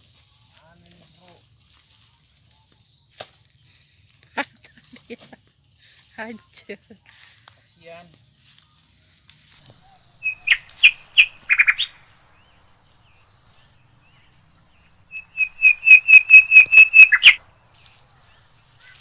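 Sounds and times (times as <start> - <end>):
bird chirping sharply: 9.8 - 19.0.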